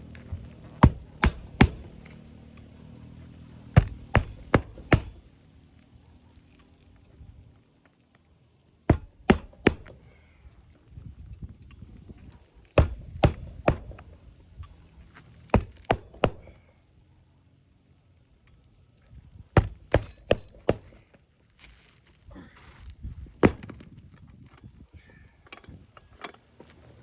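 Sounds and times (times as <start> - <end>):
hammer striking roof shingles: 0.3 - 2.2, 3.7 - 5.3, 8.9 - 10.2, 12.8 - 14.2, 15.5 - 16.6, 19.6 - 21.1, 23.4 - 23.8.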